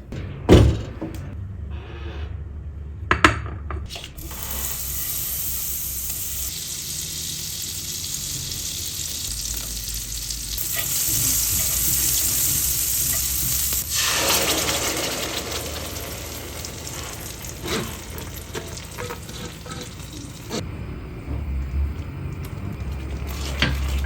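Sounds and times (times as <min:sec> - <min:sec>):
food sizzling in a pan: 0:04.2 - 0:20.6, 0:22.7 - 0:24.0.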